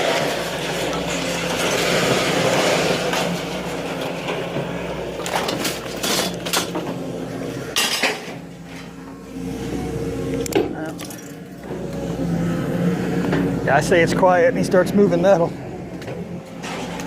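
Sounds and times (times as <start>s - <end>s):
engine hum: 0.0s - 17.0s
scrap metal clattering: 16.5s - 17.0s.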